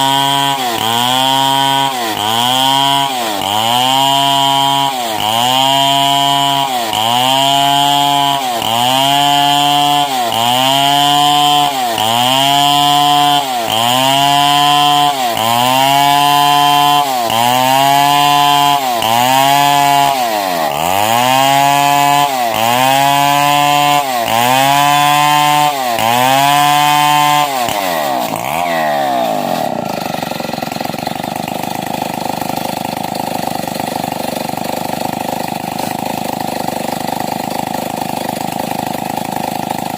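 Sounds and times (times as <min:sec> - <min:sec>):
chainsaw cutting log: 0:00.0 - 0:39.9.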